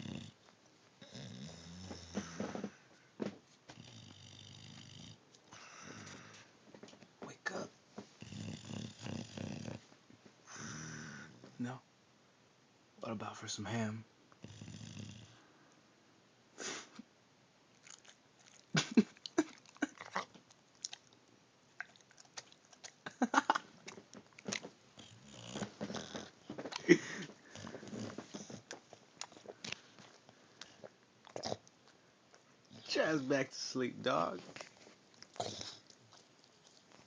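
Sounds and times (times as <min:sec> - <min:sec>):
dog chewing: 0:17.7 - 0:32.9, 0:34.4 - 0:37.0.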